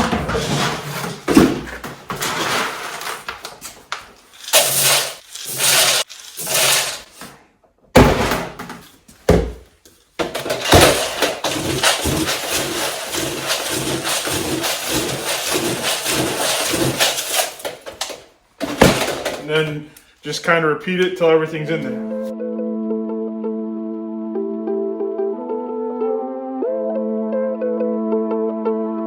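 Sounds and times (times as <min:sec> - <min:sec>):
pellets poured into container: 0:02.1 - 0:07.3, 0:10.2 - 0:19.6.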